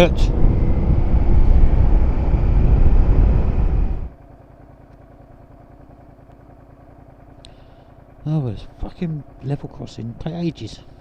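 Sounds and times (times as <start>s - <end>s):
wind noise: 0.0s - 4.1s
road noise: 0.0s - 4.2s
motorcycle engine: 0.0s - 11.0s.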